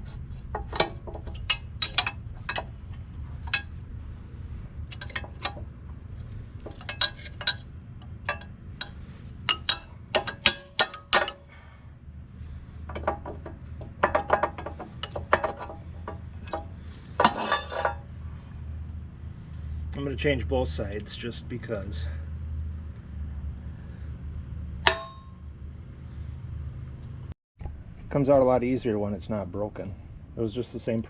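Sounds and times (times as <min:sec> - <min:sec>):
low hum: 0:00.0 - 0:28.9
metal tools clinking: 0:00.5 - 0:03.8, 0:04.9 - 0:05.6, 0:06.5 - 0:07.7, 0:08.3 - 0:11.7, 0:12.9 - 0:18.1.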